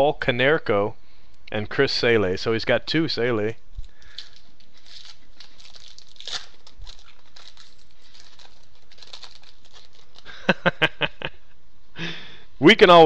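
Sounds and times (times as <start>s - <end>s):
cards and foil wrapper rustling: 3.7s - 10.7s.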